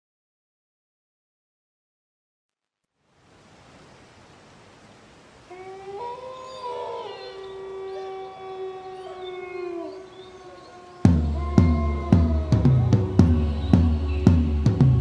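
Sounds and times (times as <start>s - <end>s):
faint hiss: 2.8s - 15.0s
wolves howling: 5.5s - 15.0s.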